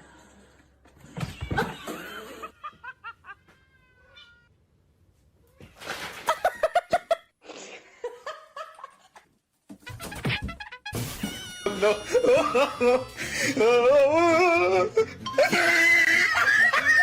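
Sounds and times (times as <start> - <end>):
person laughing: 11.6 - 17.0.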